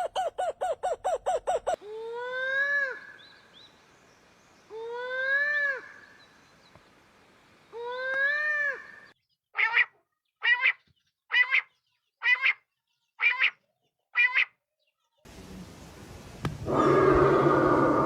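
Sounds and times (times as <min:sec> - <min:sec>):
bird calling: 0:00.0 - 0:01.8, 0:16.6 - 0:18.0.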